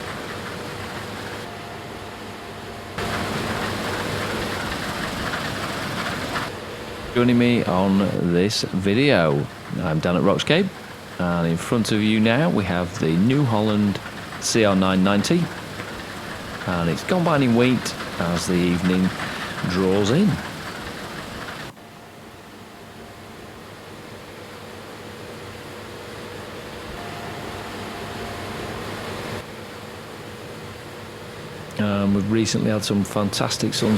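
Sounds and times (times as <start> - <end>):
combine harvester humming: 0.0 - 33.9.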